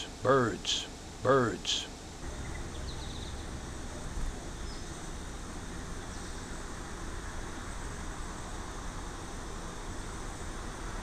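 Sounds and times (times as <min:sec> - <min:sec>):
low rumble and hiss: 0:00.0 - 0:11.0
faint high bird chirps: 0:01.7 - 0:03.6.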